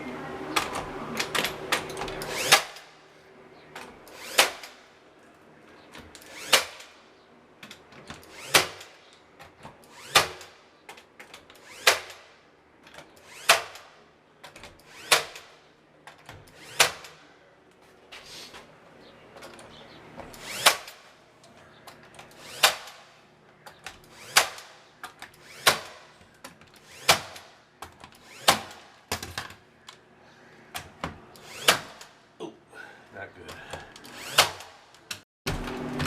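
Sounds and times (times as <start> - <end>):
tool working in sharp strokes: 2.2 - 2.9, 4.1 - 4.8, 8.2 - 8.9, 9.9 - 10.6, 11.6 - 12.3, 20.3 - 21.0, 22.3 - 23.1, 24.0 - 26.1, 26.8 - 29.0, 31.4 - 32.2, 34.1 - 34.8.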